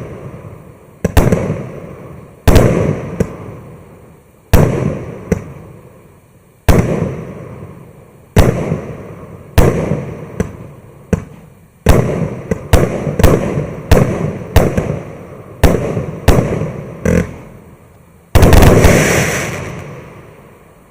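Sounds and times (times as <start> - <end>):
firework bangs with rumble: 1.0 - 1.8, 2.5 - 3.6, 4.5 - 5.6, 6.7 - 7.5, 8.4 - 17.4, 18.3 - 20.1.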